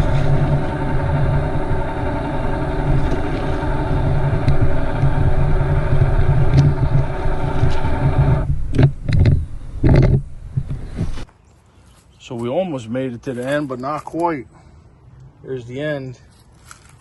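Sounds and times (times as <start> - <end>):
caulk gun motor running: 0.0 - 10.8.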